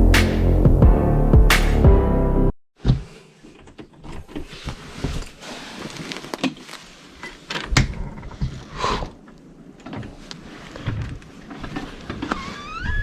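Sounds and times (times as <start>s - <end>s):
electronic music: 0.0s - 2.5s.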